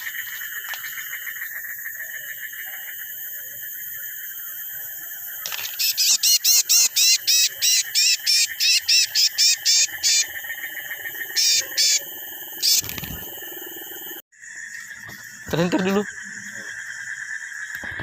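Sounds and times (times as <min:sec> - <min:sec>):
night insects droning: 0:00.0 - 0:18.0
animal chirping calls: 0:05.8 - 0:10.4, 0:11.2 - 0:13.3.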